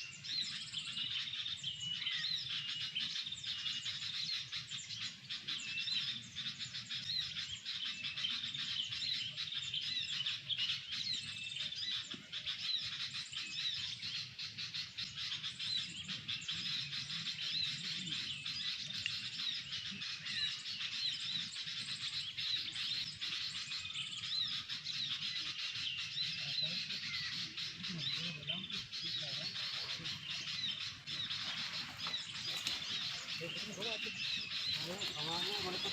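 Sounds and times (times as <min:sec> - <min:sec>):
songbird chirping rapidly: 0:00.0 - 0:35.9.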